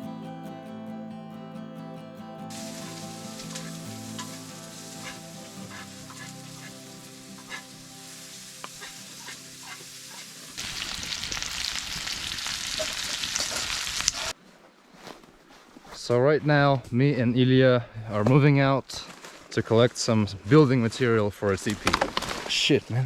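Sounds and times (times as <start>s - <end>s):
food sizzling in a frying pan: 2.5s - 14.3s.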